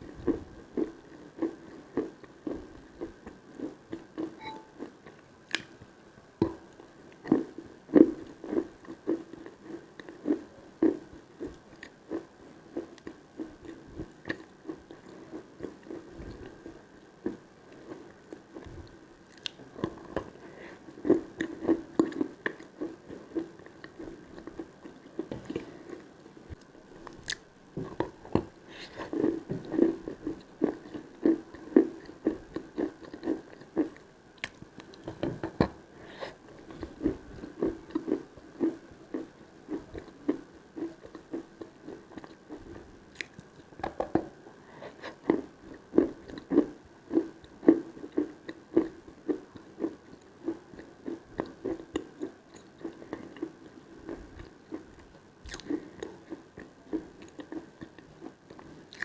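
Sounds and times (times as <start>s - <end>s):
chewing and crunching chalk: 28.8s - 35.1s, 45.0s - 59.0s.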